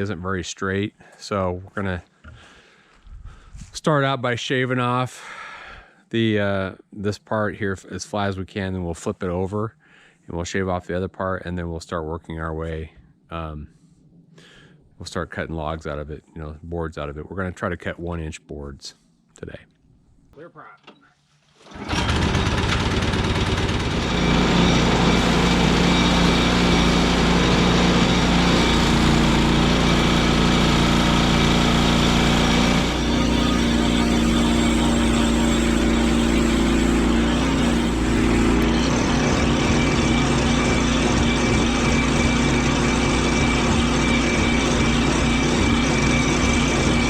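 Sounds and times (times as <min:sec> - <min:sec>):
sawmill engine running: 0:21.7 - 0:47.0.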